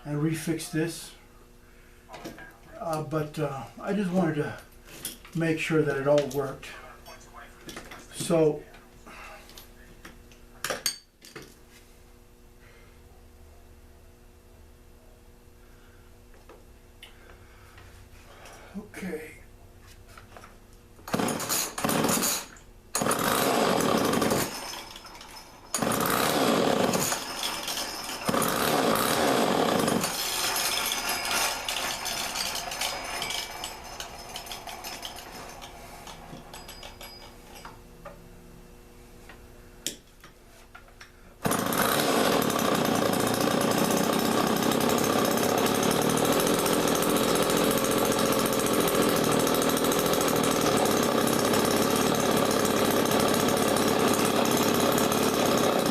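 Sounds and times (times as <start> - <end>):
chainsaw starting and running: 21.1 - 37.3, 41.4 - 55.9.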